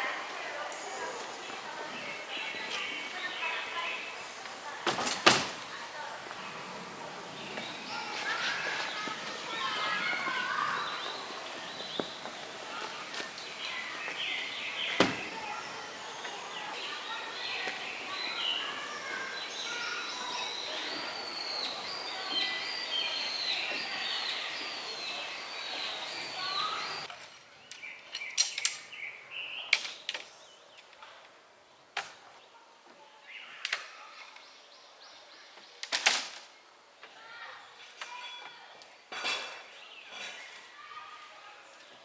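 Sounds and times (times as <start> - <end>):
birds chirping and singing: 0.0 - 30.7.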